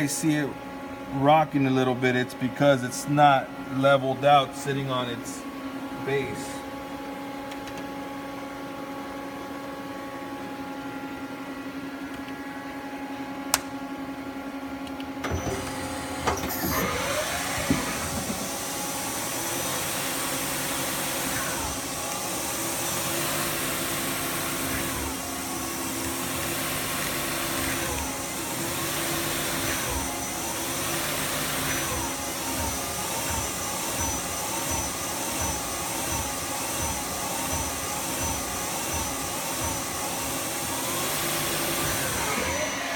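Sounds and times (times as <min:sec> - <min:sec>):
machine hum with tones: 0:00.0 - 0:42.9
lathe spindle whirring: 0:15.2 - 0:42.9.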